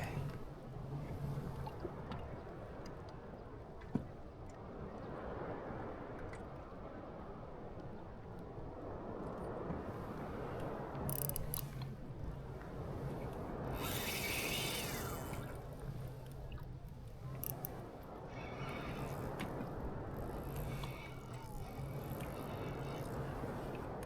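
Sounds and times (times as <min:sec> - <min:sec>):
fishing reel drag buzzing: 0:00.0 - 0:01.5, 0:10.8 - 0:24.0
water noise: 0:00.0 - 0:03.1, 0:09.7 - 0:24.0
reel clicks: 0:00.0 - 0:03.2, 0:09.4 - 0:24.0.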